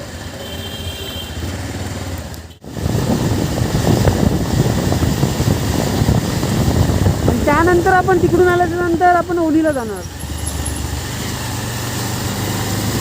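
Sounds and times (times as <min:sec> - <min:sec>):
motorcycle engine running: 0:00.0 - 0:13.0
wind noise: 0:02.6 - 0:09.5.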